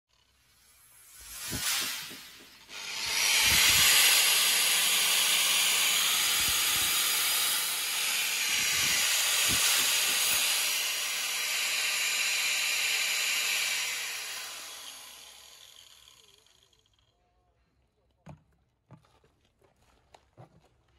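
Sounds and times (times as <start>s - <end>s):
electric impact drill running: 0.2s - 16.7s.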